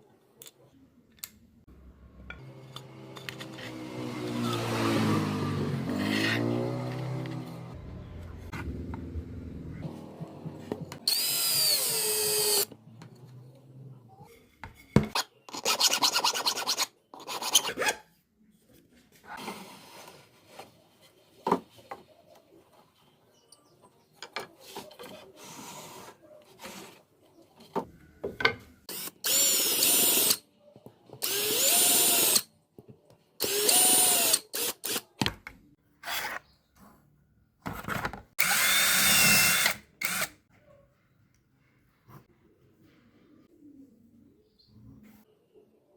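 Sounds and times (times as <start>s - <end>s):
electric drill drilling into wood: 11.1s - 12.7s, 31.2s - 32.4s, 33.4s - 35.0s, 38.4s - 40.3s.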